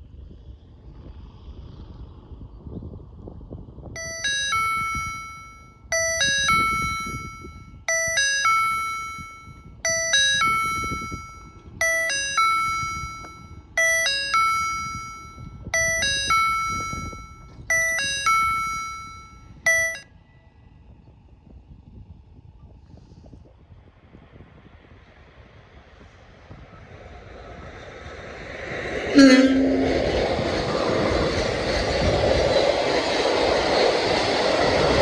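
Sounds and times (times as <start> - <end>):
level crossing warning chime: 4.0 - 20.0, 29.2 - 31.4.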